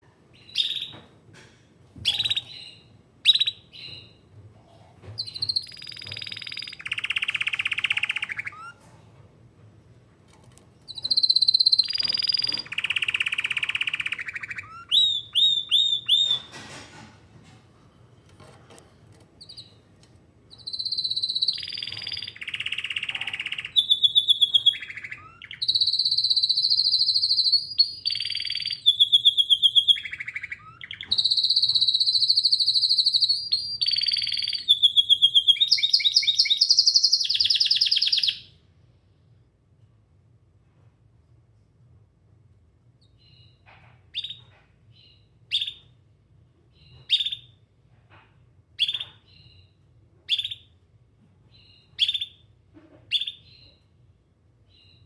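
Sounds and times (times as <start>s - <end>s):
canary singing: 0.4s - 1.0s, 2.0s - 4.2s, 5.2s - 8.8s, 10.9s - 16.6s, 19.4s - 19.8s, 20.5s - 38.5s, 43.2s - 45.9s, 46.8s - 47.6s, 48.8s - 49.7s, 50.3s - 50.8s, 51.5s - 52.4s, 53.1s - 53.8s.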